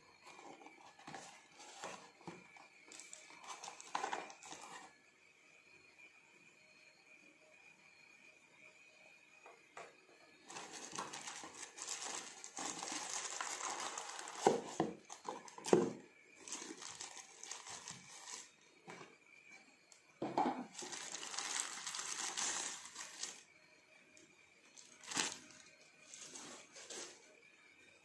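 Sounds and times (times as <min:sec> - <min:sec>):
plastic packaging crinkling: 0:02.9 - 0:04.9, 0:10.5 - 0:18.5, 0:20.7 - 0:23.4, 0:24.8 - 0:27.2.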